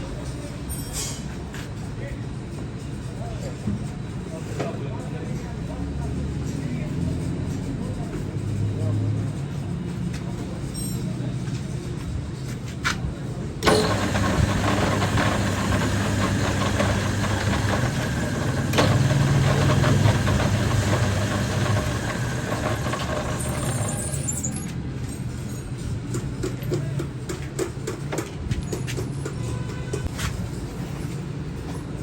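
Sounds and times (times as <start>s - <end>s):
rough mechanical noise: 13.2s - 25.1s
machinery humming: 13.6s - 24.6s.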